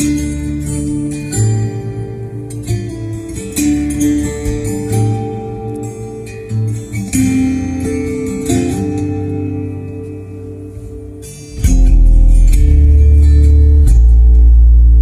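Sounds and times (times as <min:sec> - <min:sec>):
guitar music through speaker: 0:00.0 - 0:15.0
heavy bass line: 0:11.5 - 0:15.0.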